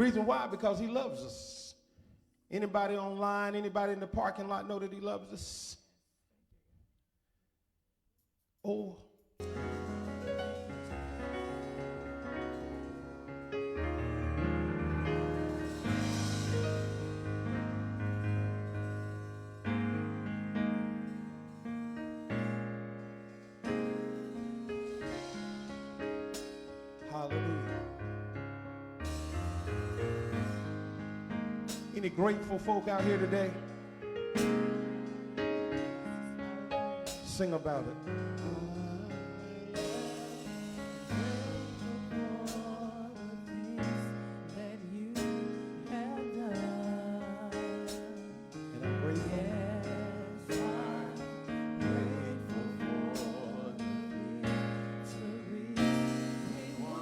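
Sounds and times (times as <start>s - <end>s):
bass line: 9.4s - 20.9s, 29.0s - 33.8s, 38.1s - 43.1s, 48.8s - 51.1s
piano chords on keyboard: 9.4s - 57.0s
person singing: 32.0s - 33.7s, 36.1s - 57.0s.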